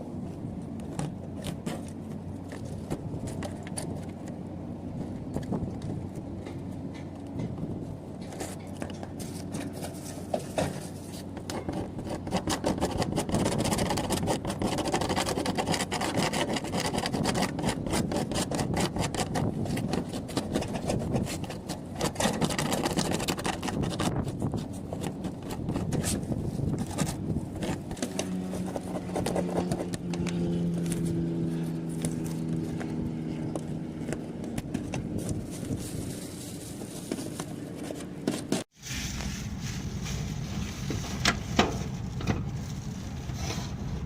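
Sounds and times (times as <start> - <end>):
scraping on a hard surface: 34.8 - 44.0.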